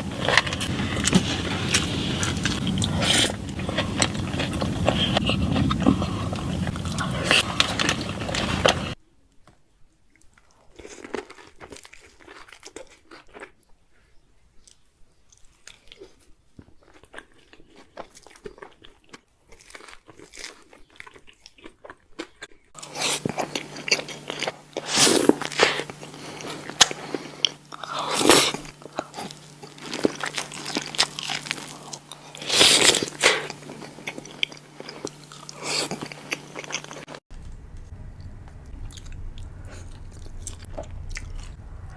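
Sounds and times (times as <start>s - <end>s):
crunchy biting and chewing: 0.0s - 9.0s, 10.3s - 13.6s, 15.4s - 41.9s
steady low hum: 0.0s - 9.0s, 22.8s - 41.9s.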